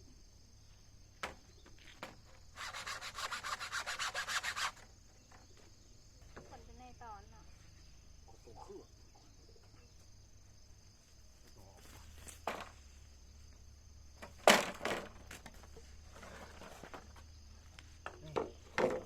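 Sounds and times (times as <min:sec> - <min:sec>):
knocks of building work: 0:01.2 - 0:02.4, 0:12.3 - 0:12.8, 0:14.2 - 0:17.3, 0:17.9 - 0:19.0.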